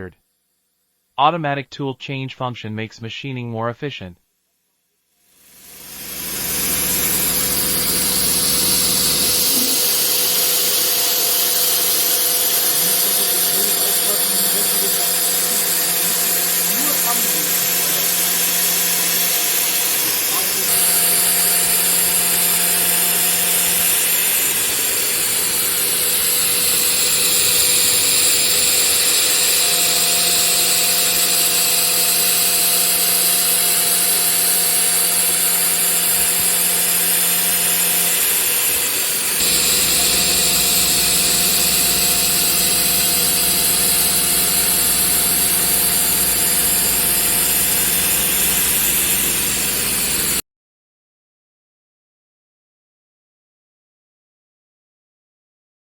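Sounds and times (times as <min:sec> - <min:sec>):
router spindle milling steel: 0:05.4 - 0:50.4
deeper machine hum: 0:05.6 - 0:30.8, 0:38.2 - 0:50.4.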